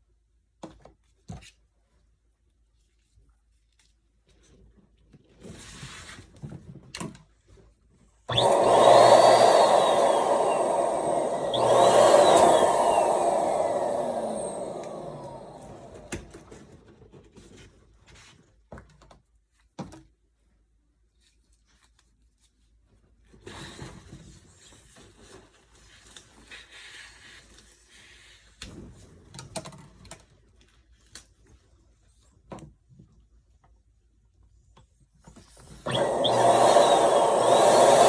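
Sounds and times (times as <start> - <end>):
electric balloon inflator whining: 8.3 - 16.5, 35.9 - 38.0.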